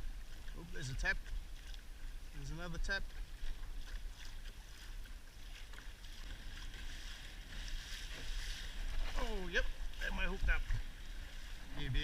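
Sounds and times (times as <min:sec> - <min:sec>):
water lapping against kayak hull: 0:00.0 - 0:12.0
wind buffeting microphone: 0:06.2 - 0:12.0.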